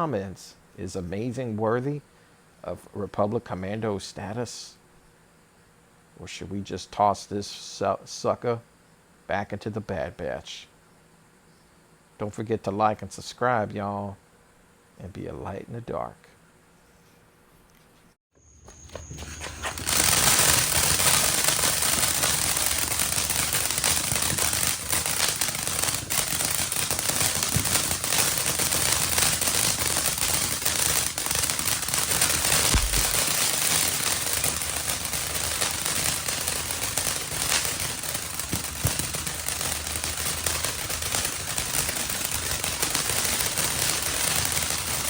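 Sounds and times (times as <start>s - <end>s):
fountain firework hissing and crackling: 18.9s - 45.0s.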